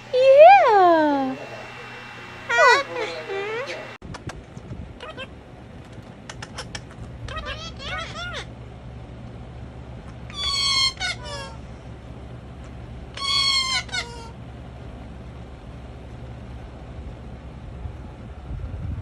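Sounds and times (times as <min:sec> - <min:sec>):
parrot squeaky calls: 0:06.4 - 0:08.5, 0:10.3 - 0:11.6, 0:13.1 - 0:14.4.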